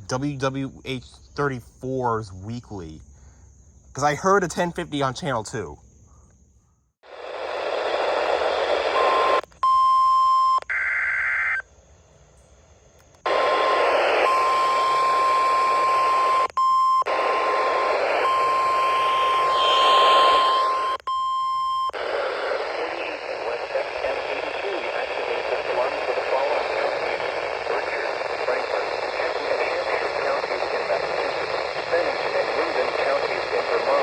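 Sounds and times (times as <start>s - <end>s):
heavy radio static: 7.0s - 9.4s, 13.3s - 16.5s, 17.1s - 21.0s, 22.0s - 34.0s
steady alarm beep: 9.0s - 10.6s, 14.2s - 22.0s
buzzy tones: 17.1s - 21.0s.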